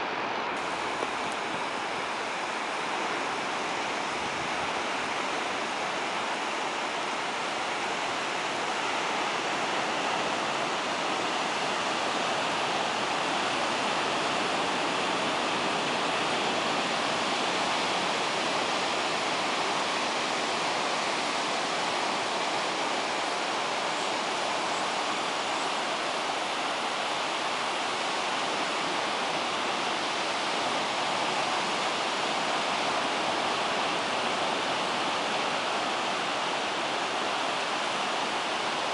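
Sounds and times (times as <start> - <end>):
ocean surf roaring: 0.0 - 38.9.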